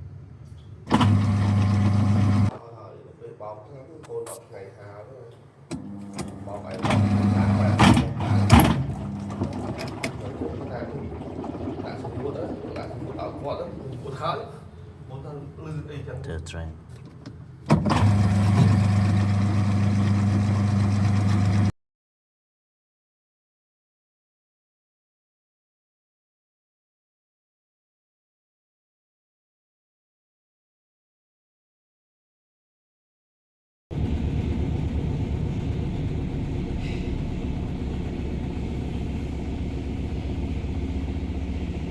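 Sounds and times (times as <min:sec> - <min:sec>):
washing machine humming: 0:00.8 - 0:02.5, 0:05.4 - 0:21.7, 0:33.9 - 0:41.9.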